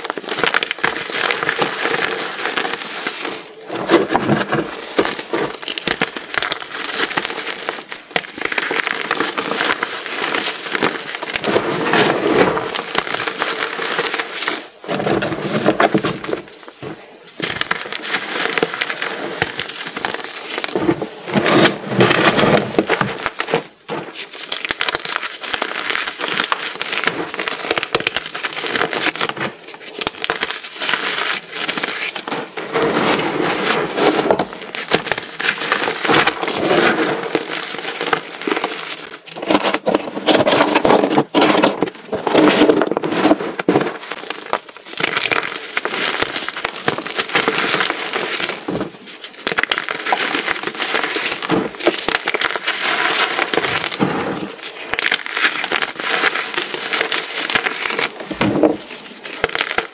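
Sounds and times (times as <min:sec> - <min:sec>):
chalk crunching and crumbling: 0:00.0 - 0:59.9.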